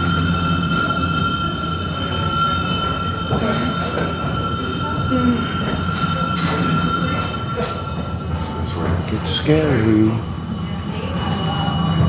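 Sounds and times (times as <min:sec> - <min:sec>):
funicular car rumbling: 0:00.0 - 0:12.0.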